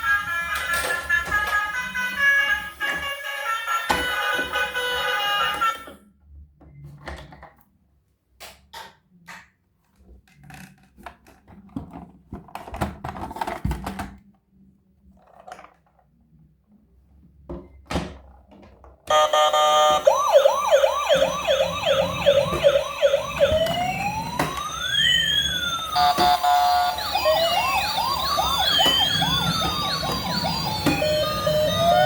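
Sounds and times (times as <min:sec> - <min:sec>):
toy electronic siren: 0:00.0 - 0:06.0, 0:19.1 - 0:32.0.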